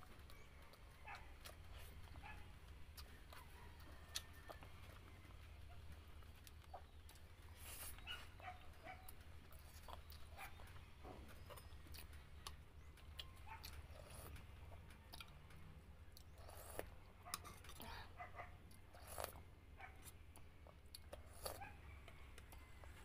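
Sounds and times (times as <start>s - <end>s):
low steady hum: 0.0s - 23.0s
person chewing: 5.9s - 10.6s, 11.4s - 22.9s.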